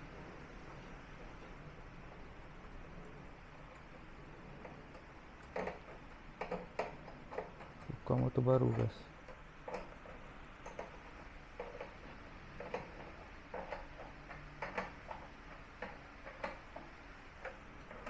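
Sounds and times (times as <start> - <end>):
tools clicking and tapping: 4.6 - 18.0.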